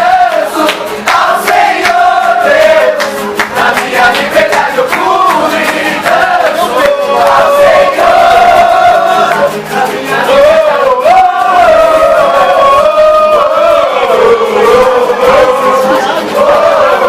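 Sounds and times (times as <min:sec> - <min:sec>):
sharp percussive beats: 0:00.0 - 0:12.2
group singing worship song: 0:00.0 - 0:17.0.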